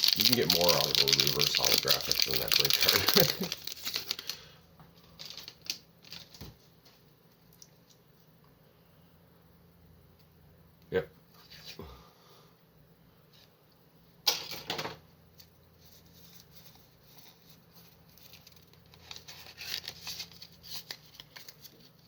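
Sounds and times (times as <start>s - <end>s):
cards rustling and clicking: 0.0s - 4.4s, 5.1s - 7.0s, 15.4s - 22.0s
foil wrapper ripped open: 0.0s - 4.5s, 18.2s - 21.8s.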